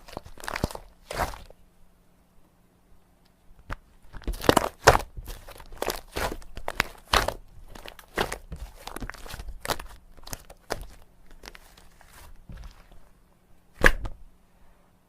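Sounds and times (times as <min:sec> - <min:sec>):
slime crackling and popping: 0:00.0 - 0:01.6, 0:03.6 - 0:13.1, 0:13.8 - 0:14.2
loud slime pop: 0:13.8 - 0:14.2.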